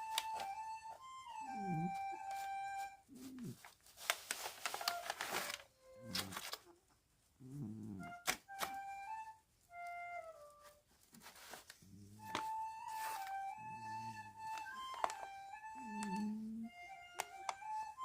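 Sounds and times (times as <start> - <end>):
background music of held notes: 0.0 - 3.6, 7.6 - 18.0
cat snoring: 1.4 - 2.3, 3.1 - 3.6, 7.4 - 8.2, 13.6 - 14.5, 15.7 - 17.0.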